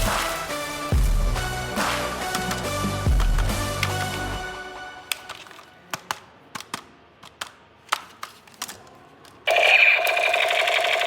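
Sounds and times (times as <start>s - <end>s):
plastic toy clicks and taps: 5.1s - 8.8s
loud electronic toy tone: 9.5s - 11.0s.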